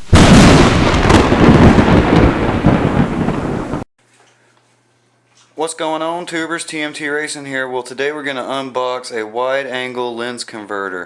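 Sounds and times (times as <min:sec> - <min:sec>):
loud dense rumbling: 0:00.1 - 0:03.8.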